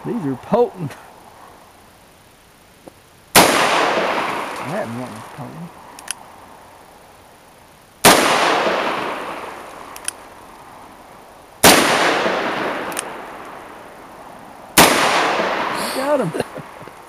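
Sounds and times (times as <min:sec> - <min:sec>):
light click: 0:06.0 - 0:06.2, 0:09.9 - 0:10.2, 0:12.9 - 0:13.6
handgun shots with echo: 0:11.6 - 0:13.2, 0:14.8 - 0:15.8.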